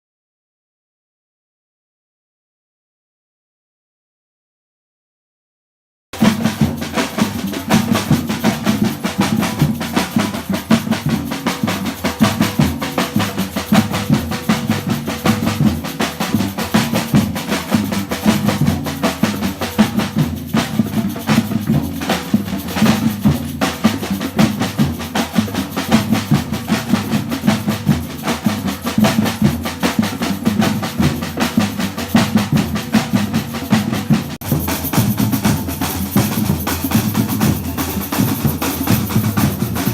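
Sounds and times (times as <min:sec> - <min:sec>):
percussion: 0:06.1 - 0:39.9
snare drums: 0:06.2 - 0:39.9.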